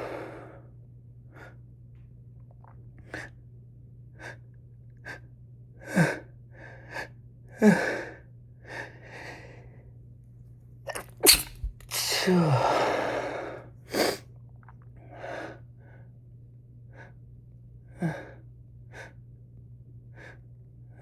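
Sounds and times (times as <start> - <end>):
woman sneezing: 10.9 - 12.7.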